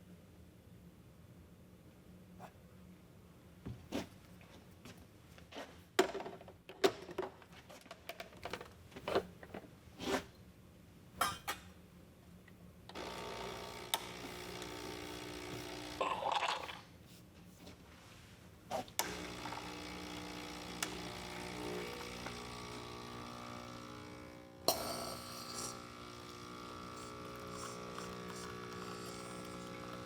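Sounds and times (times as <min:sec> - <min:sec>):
espresso machine pump humming: 0:12.9 - 0:16.8, 0:19.0 - 0:30.0.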